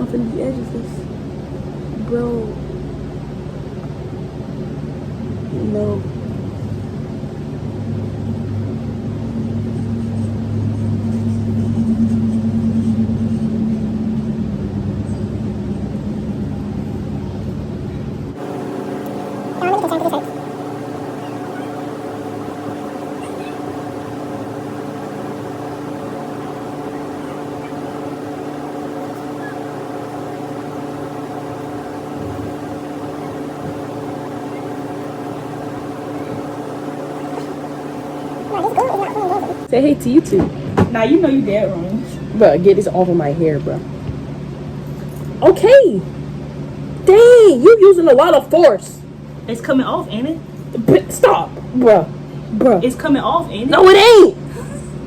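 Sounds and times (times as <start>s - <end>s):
low machine hum: 18.3s - 39.8s.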